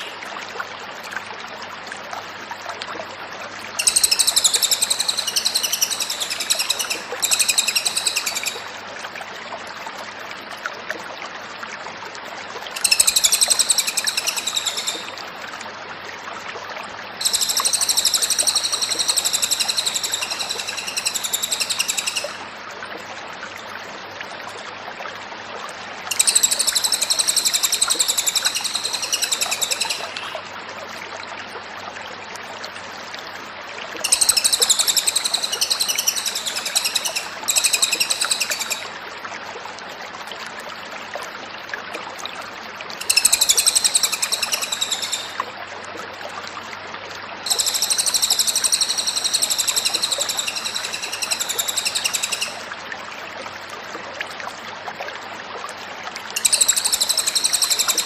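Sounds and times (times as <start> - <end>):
steady background hiss: 3.7 - 9.0, 17.2 - 22.8, 26.1 - 31.1, 32.8 - 39.0.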